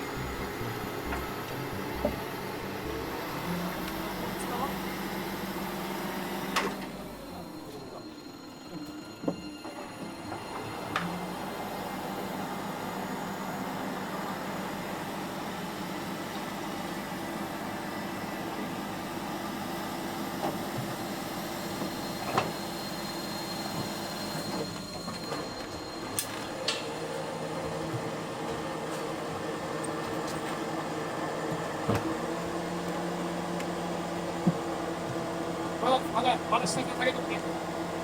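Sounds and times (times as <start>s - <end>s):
engine drone: 0.0s - 25.6s.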